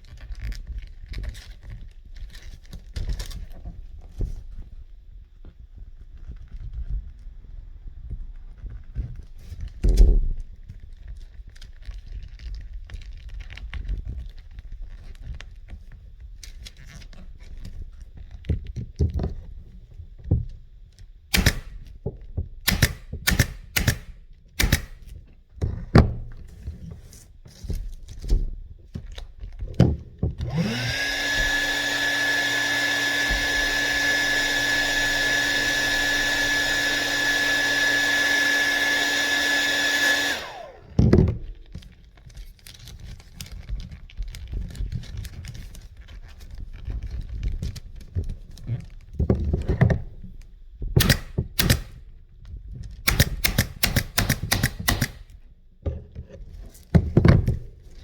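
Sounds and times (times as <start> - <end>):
knocks and sharp clicks: 21.3 - 21.9, 22.7 - 25.1, 51.0 - 52.0, 53.1 - 55.3
small electric motor whining: 30.4 - 41.6.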